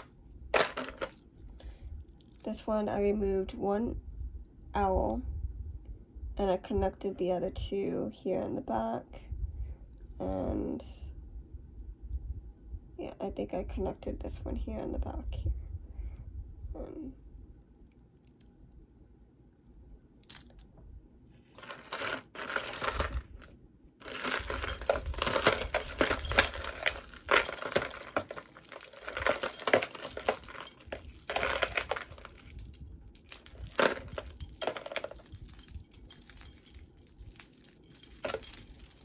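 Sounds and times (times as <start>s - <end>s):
jewelry clicking and clinking: 0.0s - 2.5s, 20.2s - 20.6s, 21.6s - 39.0s
crinkling and rustling: 0.0s - 2.6s, 21.4s - 39.0s.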